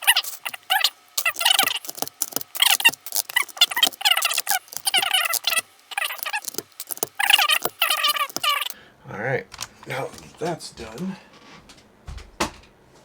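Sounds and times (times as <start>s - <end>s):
keycaps clicking and clattering: 0.0s - 8.8s.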